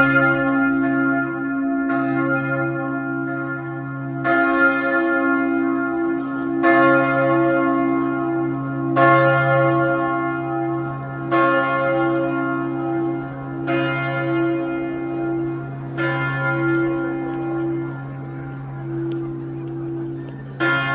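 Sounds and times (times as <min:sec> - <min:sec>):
church bell striking: 0:00.0 - 0:20.9
low hum of large bells: 0:00.0 - 0:20.9.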